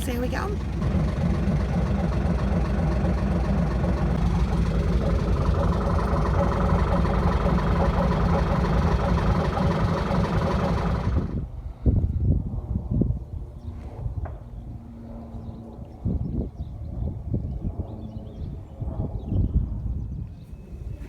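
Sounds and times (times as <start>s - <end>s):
boat engine running: 0.0s - 11.4s.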